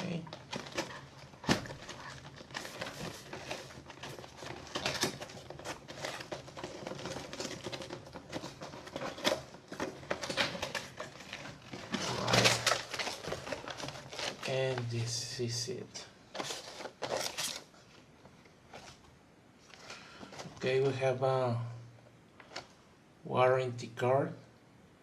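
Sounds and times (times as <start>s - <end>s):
packaging rustling: 0.0s - 15.1s, 16.3s - 20.6s.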